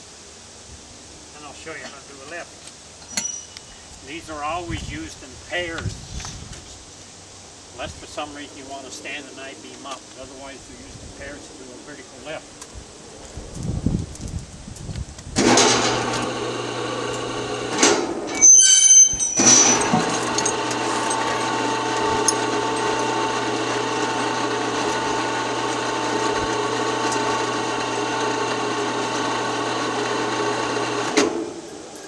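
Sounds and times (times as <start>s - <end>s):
electric hoist motor running: 15.4s - 18.4s, 19.4s - 31.6s
high squeaks: 18.3s - 23.2s.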